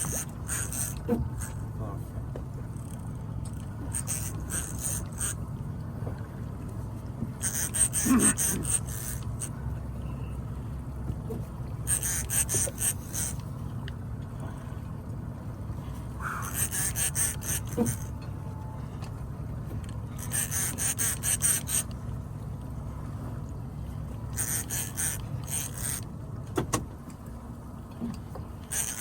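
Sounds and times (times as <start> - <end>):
fishing reel clicking: 0.0 - 1.6, 2.7 - 5.4, 7.4 - 9.6, 11.9 - 13.5, 16.3 - 18.1, 19.9 - 22.0, 24.3 - 26.0, 28.7 - 29.0
low rumble of boat: 0.0 - 29.0.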